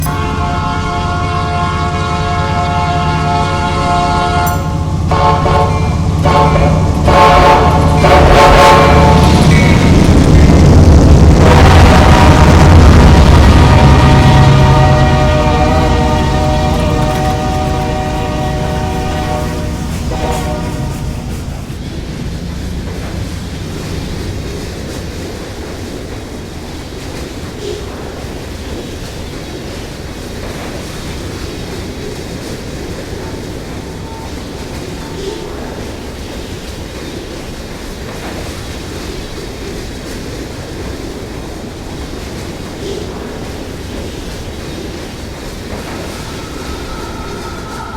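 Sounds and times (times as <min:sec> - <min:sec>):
locomotive air horn blast: 0:00.0 - 0:10.0, 0:11.4 - 0:21.8, 0:45.8 - 0:47.9
train cars rumbling and rattling: 0:00.0 - 0:47.9
wind buffeting microphone: 0:06.1 - 0:34.9.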